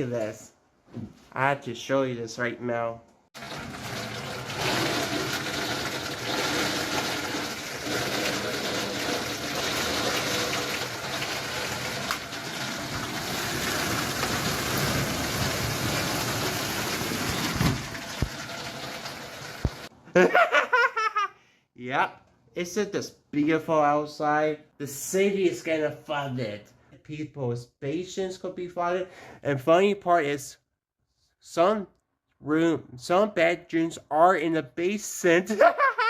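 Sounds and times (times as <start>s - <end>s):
heavy rain pouring: 3.4s - 19.9s.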